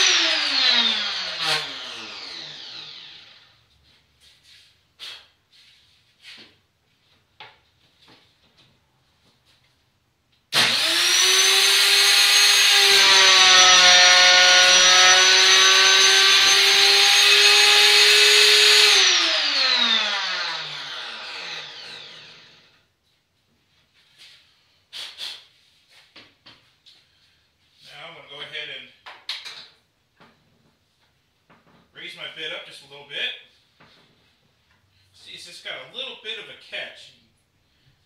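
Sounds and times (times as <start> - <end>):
wood router whining: 0.0 - 3.7, 10.6 - 22.8.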